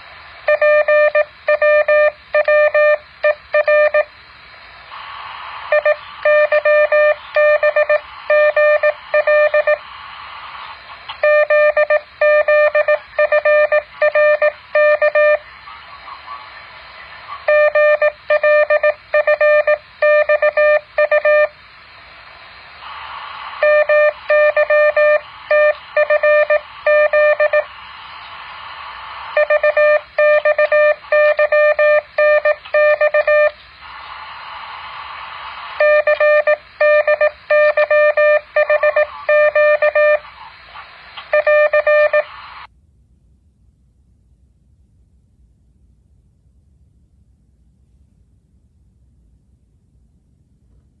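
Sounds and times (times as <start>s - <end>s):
morse code tone: 0.5s - 4.1s, 5.7s - 9.8s, 11.2s - 15.4s, 17.5s - 21.5s, 23.6s - 27.7s, 29.4s - 33.6s, 35.8s - 40.2s, 41.3s - 42.3s
hiss: 4.2s - 7.3s, 8.0s - 11.2s, 21.5s - 24.5s, 27.6s - 29.4s, 33.6s - 35.8s.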